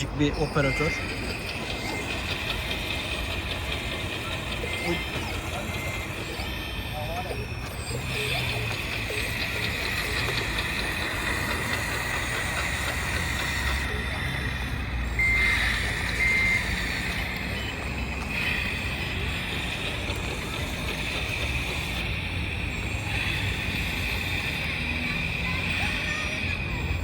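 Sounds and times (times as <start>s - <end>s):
short electronic beeps: 0.0s - 20.4s
rc machine motor whine: 0.0s - 27.0s.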